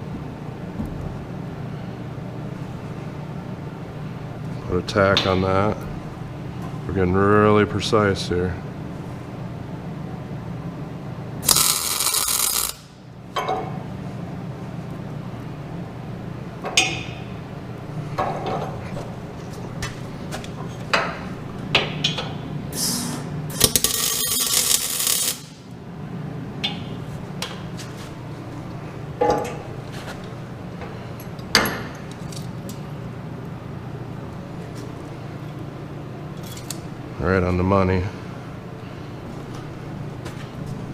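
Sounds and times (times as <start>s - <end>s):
tack weld crackling hiss: 11.4s - 12.9s, 22.8s - 25.5s.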